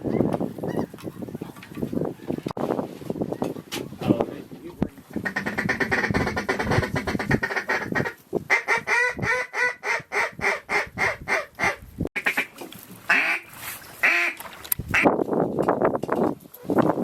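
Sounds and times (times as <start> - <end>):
duck quacking: 5.1 - 12.5, 13.1 - 14.4.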